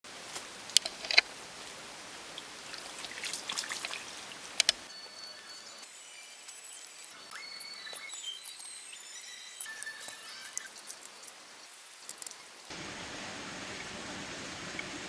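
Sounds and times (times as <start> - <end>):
creek trickling: 0.6 - 4.9
sharp clicks: 4.6 - 4.9
faint thin high tones: 4.9 - 11.4.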